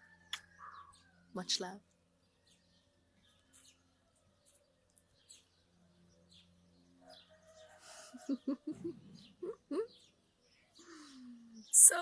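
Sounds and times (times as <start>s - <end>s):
faint bird chirps: 0.0s - 12.0s
faint low hum: 0.0s - 12.0s.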